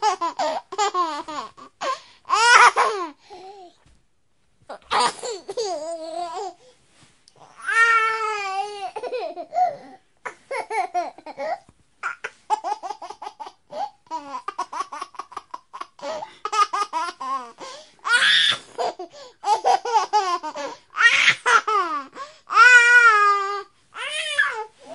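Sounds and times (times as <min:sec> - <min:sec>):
baby laughing: 0:00.0 - 0:03.2, 0:04.8 - 0:06.6, 0:08.4 - 0:22.6.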